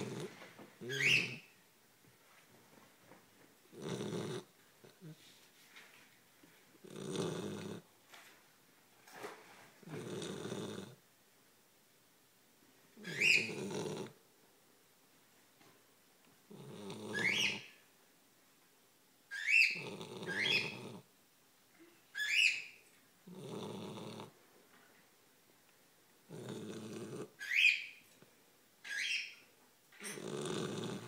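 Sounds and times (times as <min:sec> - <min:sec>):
dog snoring: 0:00.0 - 0:01.5, 0:03.7 - 0:05.2, 0:06.8 - 0:07.9, 0:09.8 - 0:11.0, 0:13.0 - 0:14.2, 0:16.5 - 0:17.6, 0:19.6 - 0:21.1, 0:23.2 - 0:24.4, 0:26.3 - 0:27.4, 0:30.0 - 0:31.0.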